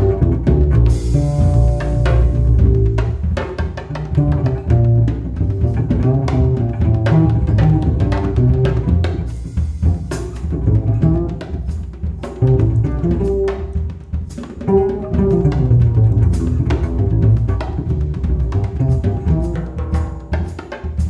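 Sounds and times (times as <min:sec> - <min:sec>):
plucked double bass: 0:00.0 - 0:21.0
drum and cymbal strokes: 0:09.2 - 0:13.5.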